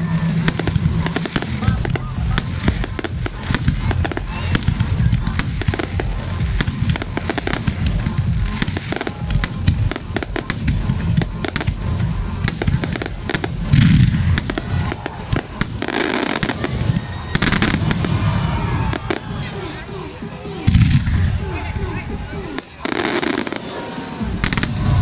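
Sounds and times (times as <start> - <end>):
rumble of overlapping booms: 0.0 - 20.0
fireworks bangs and crackles: 0.0 - 25.0.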